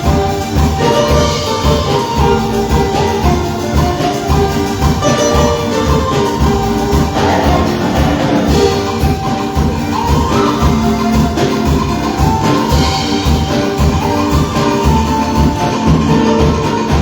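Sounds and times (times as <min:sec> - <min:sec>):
held instrumental tones: 0:00.0 - 0:17.0
steady drum beat: 0:00.0 - 0:17.0.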